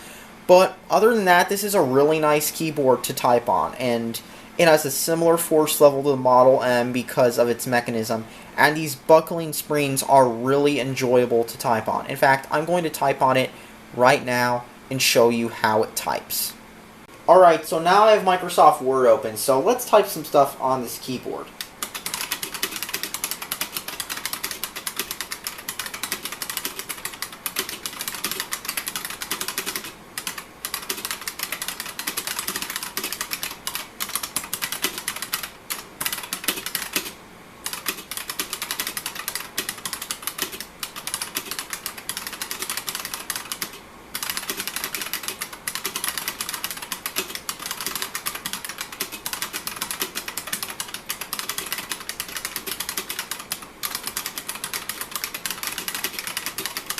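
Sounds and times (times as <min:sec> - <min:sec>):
fast typing on clicky keyboard: 0:21.6 - 0:56.9.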